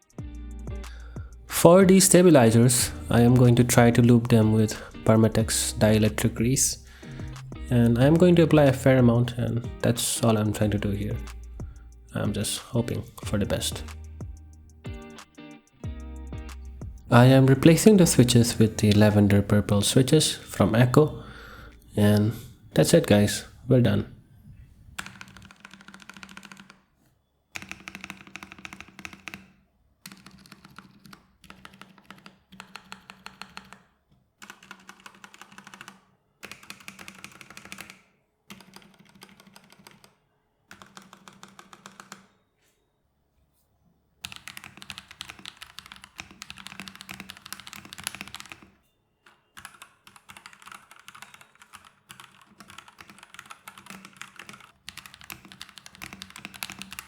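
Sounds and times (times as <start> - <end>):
mechanical keyboard typing: 25.0 - 26.9, 27.6 - 42.3, 44.2 - 57.0.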